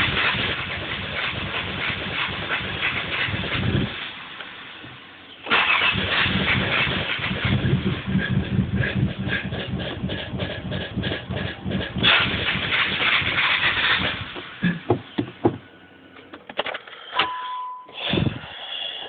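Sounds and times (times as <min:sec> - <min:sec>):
car engine misfiring: 0:00.0 - 0:17.3
short beep: 0:17.2 - 0:18.0.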